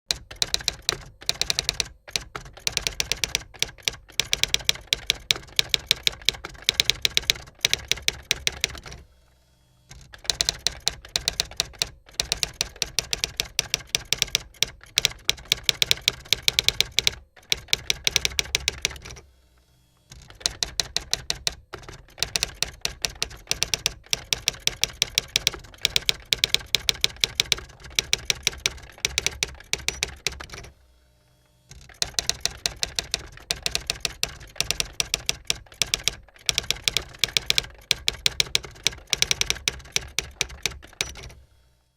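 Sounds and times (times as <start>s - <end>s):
rapid keyboard typing: 0.1s - 9.0s, 9.9s - 19.2s, 20.1s - 30.7s, 31.7s - 41.4s.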